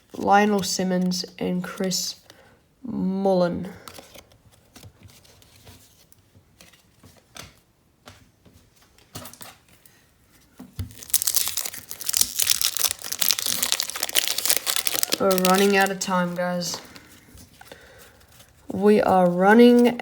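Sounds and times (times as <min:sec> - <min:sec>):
card pack wrapper tearing: 0:10.8 - 0:16.0.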